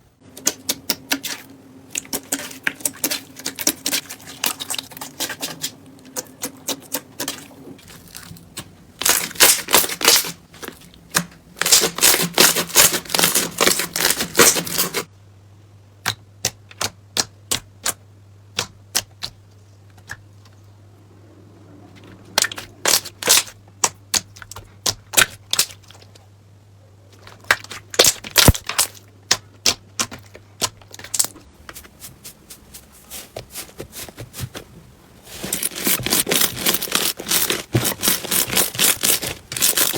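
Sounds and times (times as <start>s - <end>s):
slime squishing with crackling pops: 22.3s - 26.2s, 27.1s - 31.5s.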